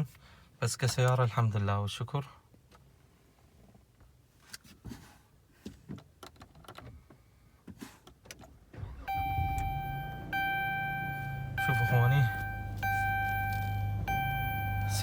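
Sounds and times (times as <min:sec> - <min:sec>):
car engine cranking and running: 0:08.6 - 0:15.0
steady high tones: 0:09.1 - 0:15.0.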